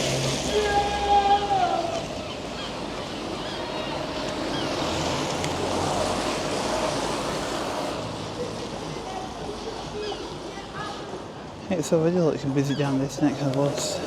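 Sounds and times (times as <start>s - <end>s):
faint voices: 0.4s - 14.0s
rushing noise: 3.2s - 8.2s.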